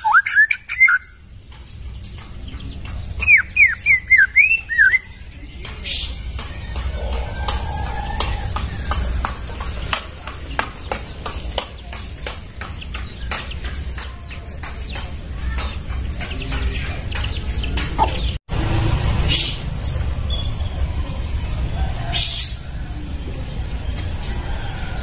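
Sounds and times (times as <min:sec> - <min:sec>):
bird chips and whistles: 0:00.0 - 0:01.2, 0:03.2 - 0:05.1.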